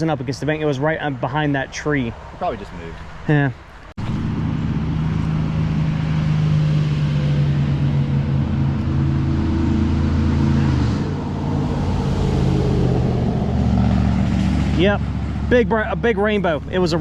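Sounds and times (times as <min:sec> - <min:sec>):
low mechanical drone: 0:04.0 - 0:17.0.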